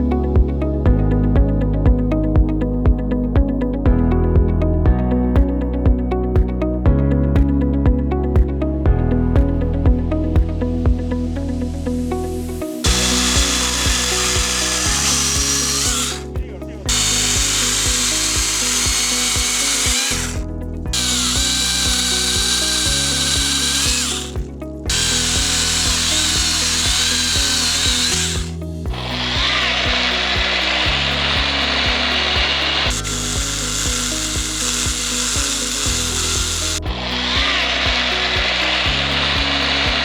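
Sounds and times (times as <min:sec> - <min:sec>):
background music with steady beat: 0:00.0 - 0:40.0
electric chainsaw cutting wood: 0:12.8 - 0:40.0.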